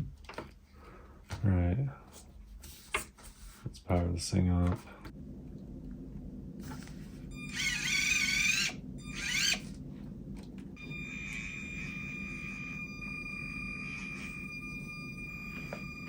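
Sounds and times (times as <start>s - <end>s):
steady high-pitched whine: 5.0s - 16.0s
warbling electronic whines: 6.6s - 10.1s, 10.7s - 16.0s.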